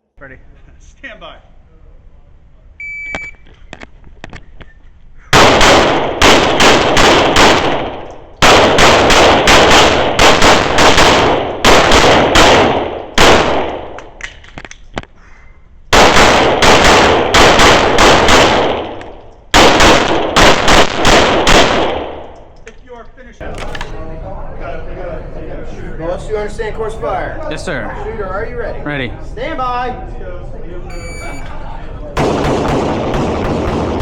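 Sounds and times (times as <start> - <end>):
shot timer beep: 2.8 - 3.4, 30.9 - 31.6
rapid pistol fire: 5.3 - 14.0, 15.9 - 22.3, 32.2 - 34.0.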